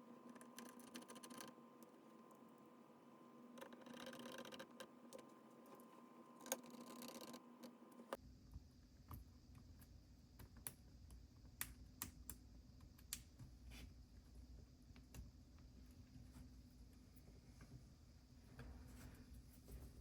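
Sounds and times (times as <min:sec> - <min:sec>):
light clicks of small parts: 0:10.4 - 0:13.5.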